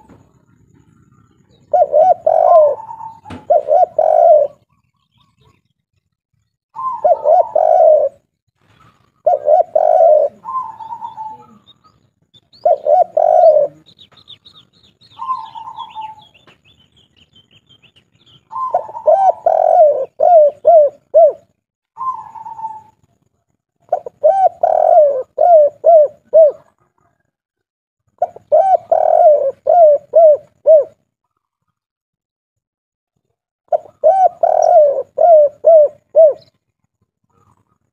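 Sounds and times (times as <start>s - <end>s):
dove cooing: 0.0s - 5.6s, 6.8s - 8.3s, 8.9s - 11.9s, 12.5s - 16.4s, 18.4s - 23.0s, 23.9s - 27.2s, 28.2s - 31.0s, 33.7s - 36.6s
small bird twittering: 8.7s - 20.9s.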